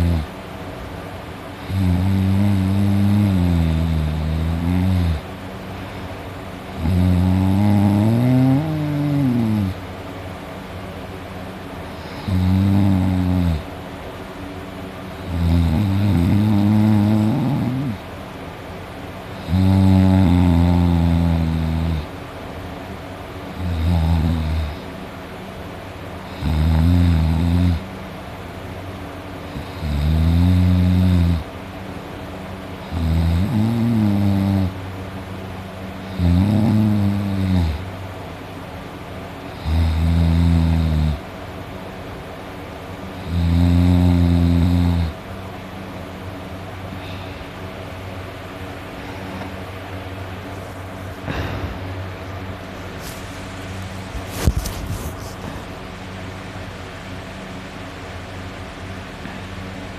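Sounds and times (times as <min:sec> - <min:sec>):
person snoring deeply: 0:00.0 - 0:00.3, 0:01.6 - 0:05.2, 0:06.8 - 0:09.8, 0:11.9 - 0:13.7, 0:15.2 - 0:18.0, 0:19.4 - 0:22.1, 0:23.6 - 0:24.9, 0:26.2 - 0:27.8, 0:29.5 - 0:31.5, 0:32.8 - 0:34.8, 0:36.0 - 0:37.8, 0:39.5 - 0:41.2, 0:43.2 - 0:45.2.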